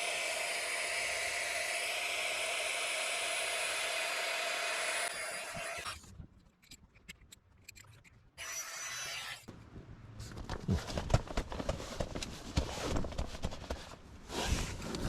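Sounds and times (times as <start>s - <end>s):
electric air pump whirring: 0.0s - 6.0s.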